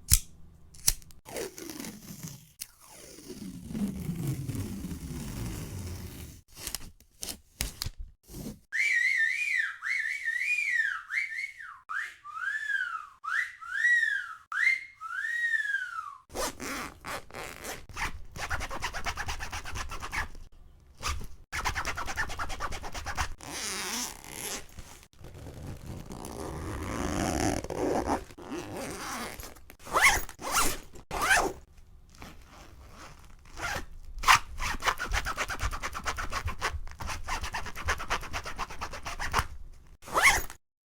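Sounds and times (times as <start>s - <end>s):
zipper-like scraping noises: 1.3s - 6.5s, 8.2s - 8.7s, 16.3s - 20.3s, 21.0s - 31.6s, 32.2s - 40.6s
cartoon whistle tones: 8.8s - 16.2s.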